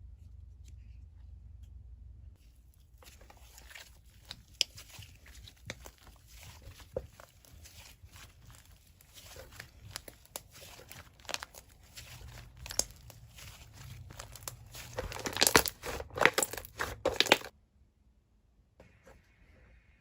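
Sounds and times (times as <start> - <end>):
slime squishing crackling clicks: 7.7 - 17.5.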